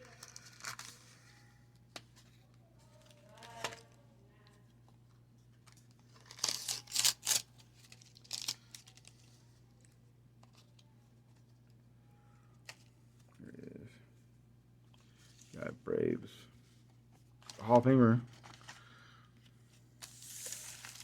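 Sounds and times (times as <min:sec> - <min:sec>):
wax paper wrapper tearing: 0:00.0 - 0:01.3, 0:06.1 - 0:09.3, 0:20.0 - 0:21.0.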